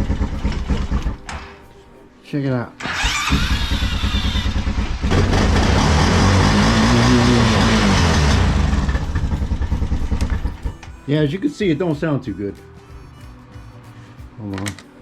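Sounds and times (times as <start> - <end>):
atv engine revving: 0.0 - 1.2, 2.8 - 10.7.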